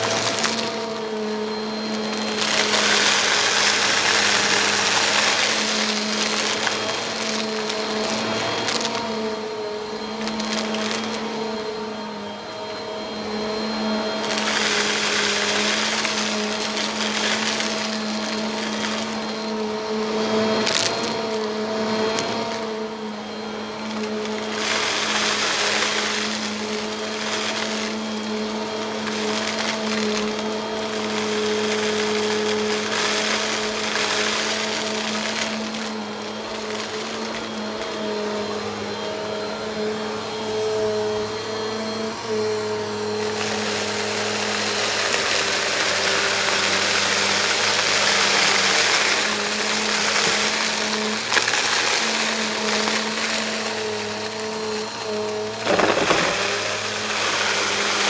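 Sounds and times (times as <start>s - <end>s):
vacuum cleaner running: 0.0s - 58.0s.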